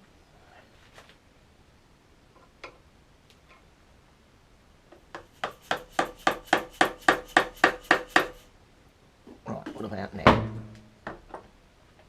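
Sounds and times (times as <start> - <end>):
rapid hammer taps: 5.1 - 8.4.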